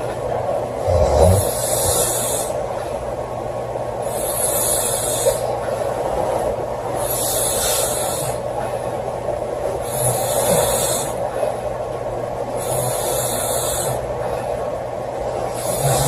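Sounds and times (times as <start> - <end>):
steady background hiss: 0.0 - 16.0
woman snoring: 0.8 - 2.6, 15.5 - 16.0.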